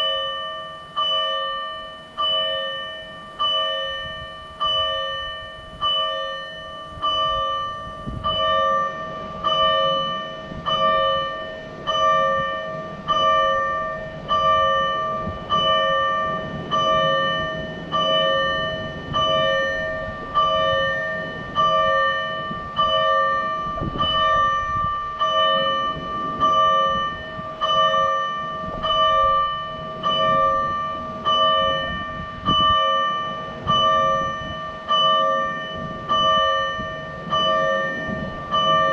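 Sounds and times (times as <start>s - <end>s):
electronic warning bell strikes: 0.0s - 38.9s.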